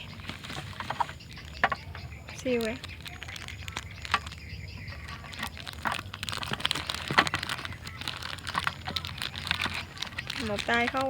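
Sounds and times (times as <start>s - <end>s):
packaging crinkling: 0.0s - 11.0s.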